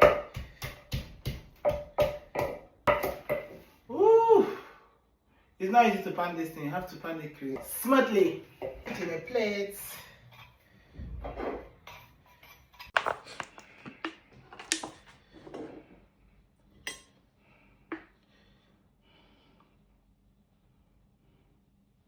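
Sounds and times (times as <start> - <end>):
utensil scraping and clinking crockery: 11.4 - 15.9.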